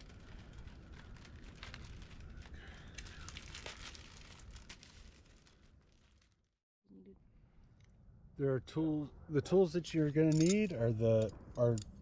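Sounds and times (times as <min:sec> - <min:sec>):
packaging crinkling and rustling: 0:00.0 - 0:06.5.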